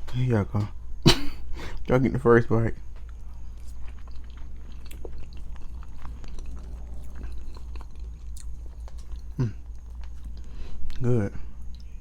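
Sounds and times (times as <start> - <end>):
faint low hum: 0.0 - 12.0.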